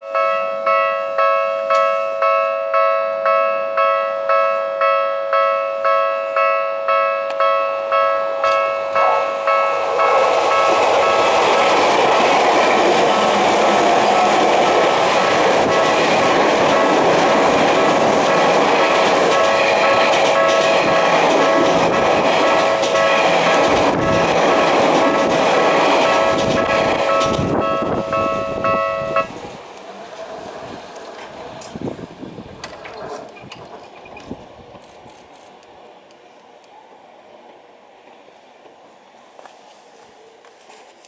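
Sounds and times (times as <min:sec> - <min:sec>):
level crossing warning bell: 0:00.0 - 0:29.7
electric train passing: 0:00.0 - 0:40.4.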